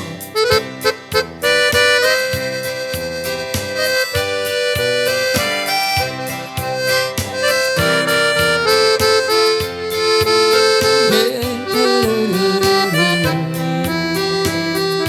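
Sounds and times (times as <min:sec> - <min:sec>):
free-reed instrument melody: 0:00.0 - 0:15.0
steady beat: 0:00.0 - 0:15.0.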